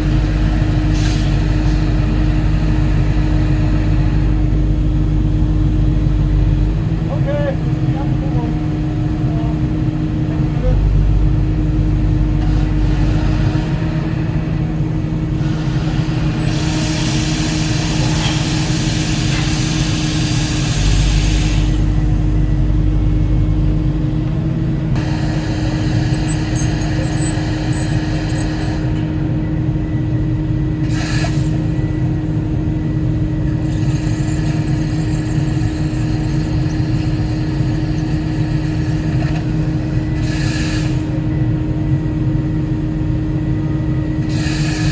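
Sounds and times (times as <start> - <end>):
excavator diesel engine: 0.0 - 44.9
hiss: 0.5 - 3.7, 15.4 - 22.0, 25.0 - 29.1, 30.8 - 32.1, 33.6 - 41.3, 44.2 - 44.9.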